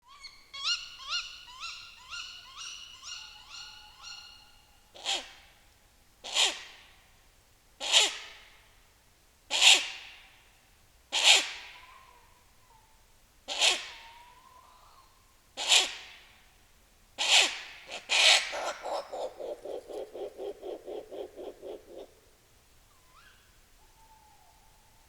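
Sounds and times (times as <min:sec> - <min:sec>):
owl contact call: 0:17.2 - 0:22.2.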